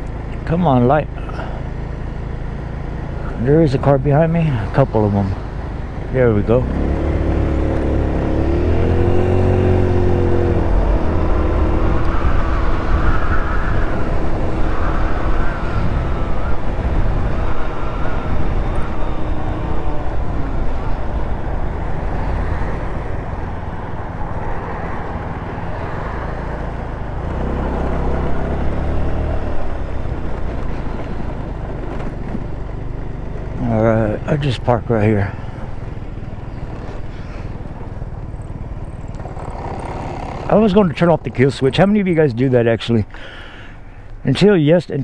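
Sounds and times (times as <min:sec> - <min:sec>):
scooter engine accelerating: 0:01.2 - 0:42.2
wind buffeting microphone: 0:07.5 - 0:28.6.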